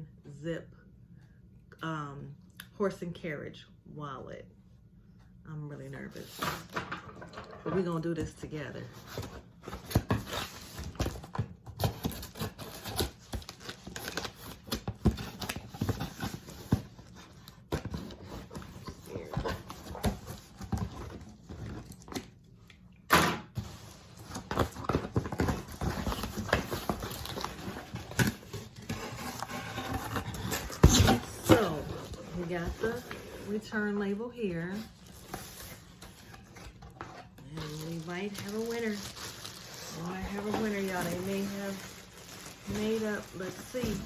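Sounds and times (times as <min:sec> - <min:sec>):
cardboard crinkling and rustling: 0:08.8 - 0:22.4, 0:23.6 - 0:44.0.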